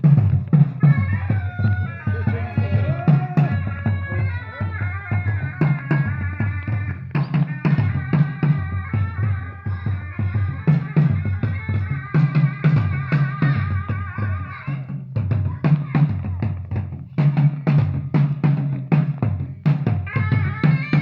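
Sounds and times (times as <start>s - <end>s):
drums beating: 0.0s - 21.0s
wavering melody: 0.8s - 12.3s.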